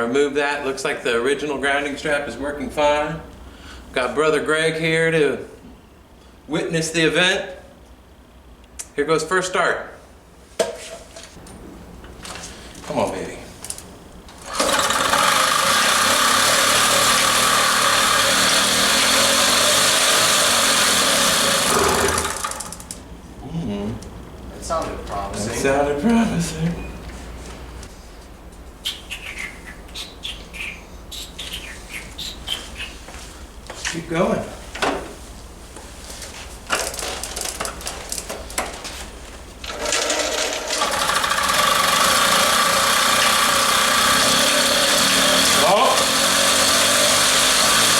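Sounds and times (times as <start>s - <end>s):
moped engine running: 40.2s - 47.9s.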